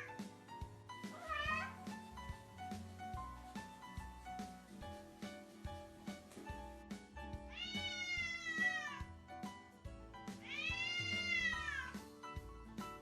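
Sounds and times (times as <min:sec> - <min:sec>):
background music: 0:00.0 - 0:13.0
cat meowing: 0:01.1 - 0:01.9, 0:07.5 - 0:09.0, 0:10.4 - 0:12.0.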